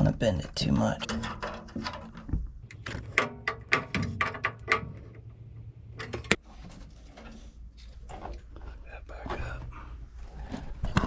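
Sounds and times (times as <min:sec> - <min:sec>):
metal parts clicking and knocking: 0:01.0 - 0:06.4
low steady hum: 0:02.6 - 0:06.4.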